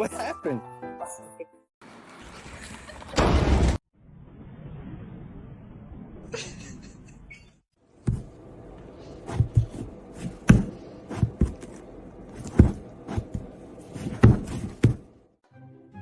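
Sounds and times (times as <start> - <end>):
thumps and knocks: 8.0 - 8.4, 9.3 - 11.8, 12.4 - 15.2.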